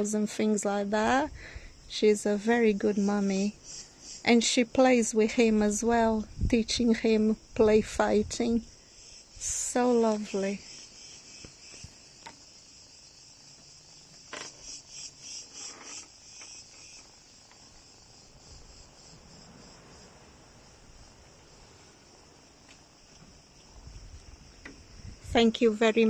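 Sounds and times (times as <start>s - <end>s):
insects chirring: 0.0s - 26.0s.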